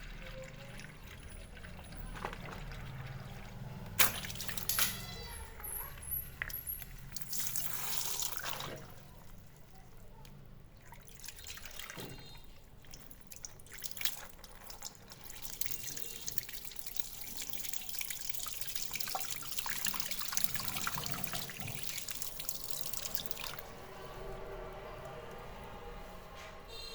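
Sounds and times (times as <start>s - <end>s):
water splashing and dripping: 0.0s - 9.8s, 10.7s - 25.8s.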